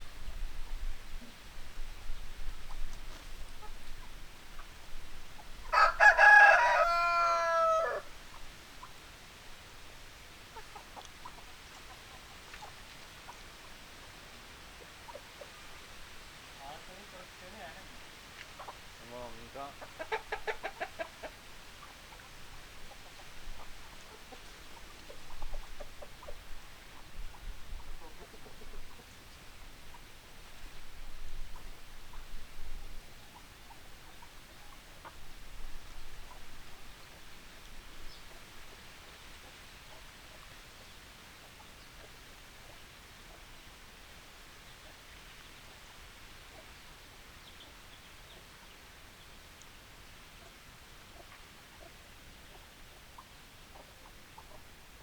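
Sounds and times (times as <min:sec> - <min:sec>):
hens clucking: 0:01.9 - 0:09.1, 0:10.2 - 0:30.8, 0:50.3 - 0:55.0
rooster crowing: 0:05.7 - 0:08.1.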